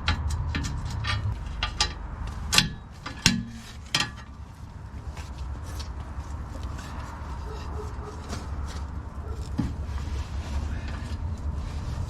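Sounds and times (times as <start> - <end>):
low rumble: 0.0 - 5.2.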